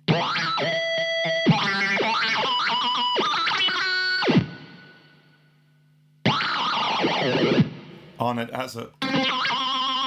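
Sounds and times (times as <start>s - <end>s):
electric guitar with wobbling pitch: 0.0s - 4.8s, 6.2s - 7.9s, 9.0s - 10.0s.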